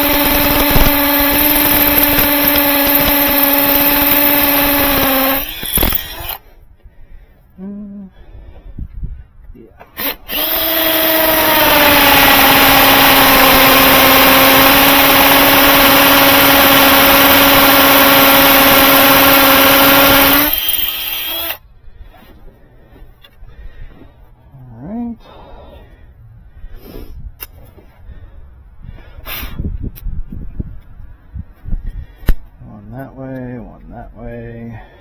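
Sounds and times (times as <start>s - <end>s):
hammer drill boring into wall: 0.0s - 6.4s, 10.0s - 21.6s.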